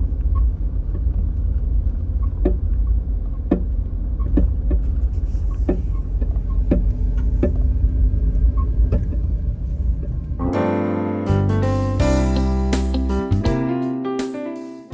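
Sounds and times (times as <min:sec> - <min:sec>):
road and engine rumble: 0:00.0 - 0:10.6
piano music: 0:10.4 - 0:14.9.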